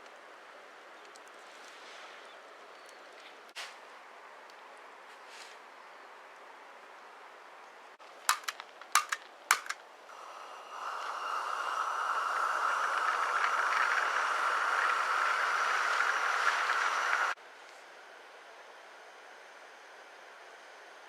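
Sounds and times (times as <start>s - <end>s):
gas igniter clicks: 8.3s - 9.8s.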